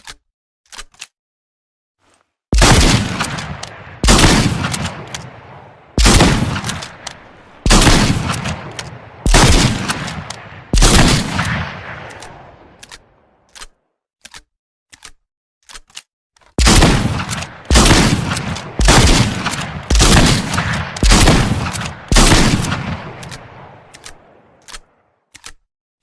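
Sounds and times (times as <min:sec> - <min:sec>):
metallic lever clicks: 0:00.0 - 0:01.2, 0:23.2 - 0:25.6
loud shotgun shots: 0:02.6 - 0:13.1, 0:16.6 - 0:24.6.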